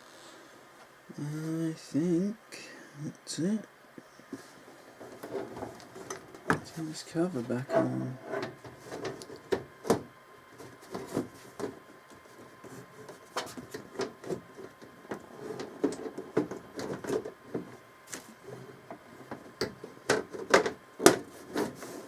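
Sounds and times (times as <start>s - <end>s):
panel handling clicks and knocks: 19.3s - 21.3s.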